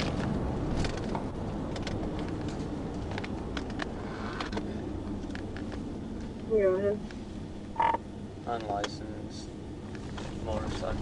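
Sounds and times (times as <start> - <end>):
car engine rumble: 0.0 - 11.0
road noise: 0.0 - 11.0.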